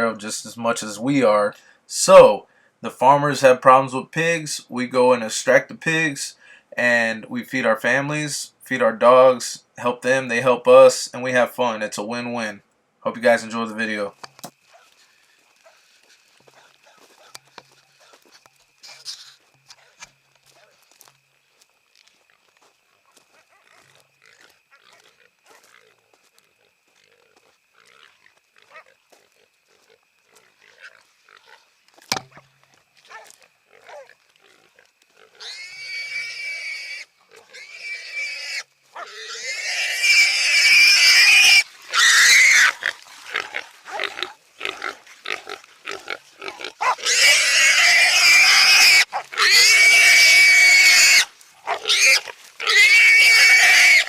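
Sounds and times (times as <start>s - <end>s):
faint rustling: 14.1s - 35.2s
hog squealing: 33.1s - 54.0s.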